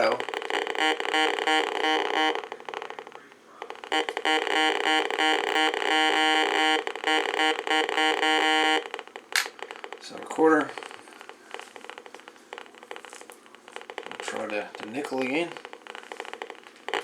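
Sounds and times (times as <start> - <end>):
metal detector buzzy tone: 3.9 - 8.9.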